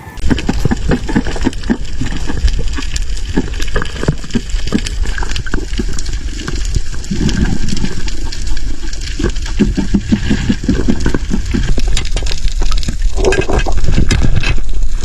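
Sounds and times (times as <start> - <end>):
dense crackling and clicking: 0.0 - 15.0
steady low rumble: 0.0 - 15.0
water sloshing and gurgling: 0.2 - 15.0.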